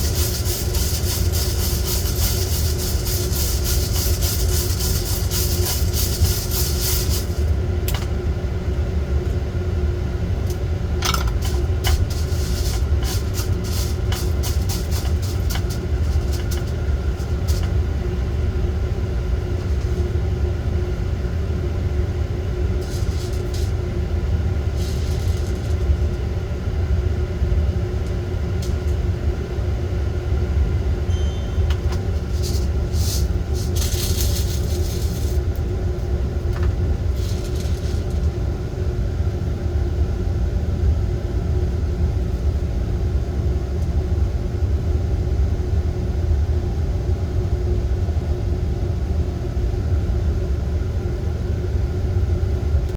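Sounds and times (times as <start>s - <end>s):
crackling or rattling: 0.0s - 8.1s, 11.0s - 17.8s, 22.8s - 23.9s, 24.6s - 26.2s, 31.6s - 35.8s, 36.5s - 38.4s
coffee roaster drone: 0.0s - 52.9s.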